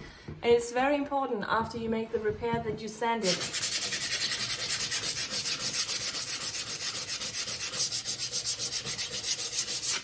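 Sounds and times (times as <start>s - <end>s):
sandpaper rubbing on wood: 3.2s - 10.0s.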